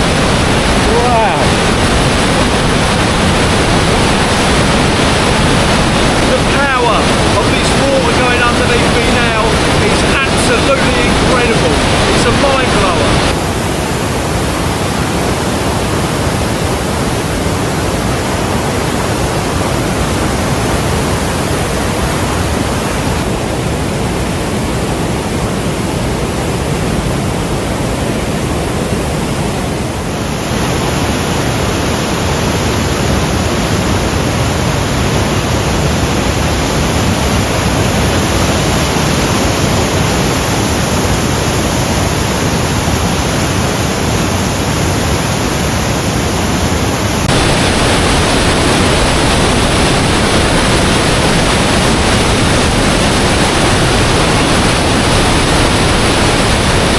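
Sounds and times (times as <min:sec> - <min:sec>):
waterfall rushing: 0:00.0 - 0:56.9.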